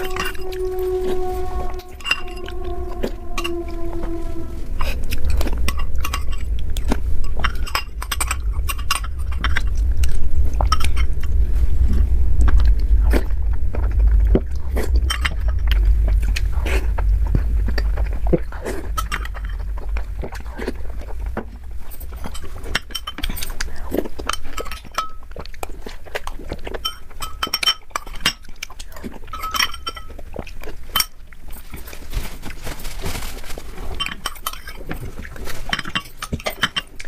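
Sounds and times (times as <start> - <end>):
steady low rumble: 0.0 - 32.1
chewing soft sweets: 4.8 - 37.0
spoon clinking against a dish: 26.8 - 28.5, 29.3 - 30.2.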